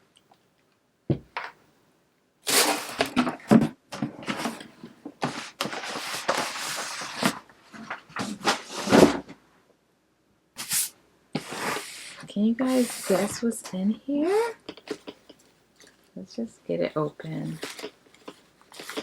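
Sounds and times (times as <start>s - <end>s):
packaging rustling and crinkling: 2.5s - 9.2s, 17.4s - 19.0s.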